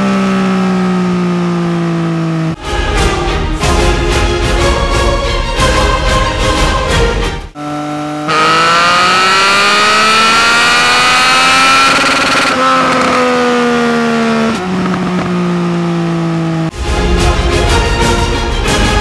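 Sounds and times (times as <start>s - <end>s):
motorcycle engine revving: 0.0s - 2.7s, 7.5s - 16.8s.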